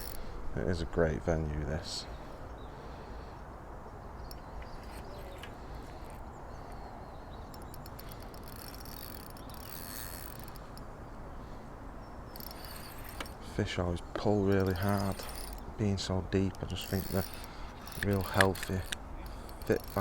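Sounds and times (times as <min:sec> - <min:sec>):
fishing reel ratcheting: 0:00.0 - 0:00.2, 0:04.3 - 0:06.2, 0:07.5 - 0:10.9, 0:12.3 - 0:13.4, 0:14.4 - 0:15.7, 0:16.4 - 0:20.0.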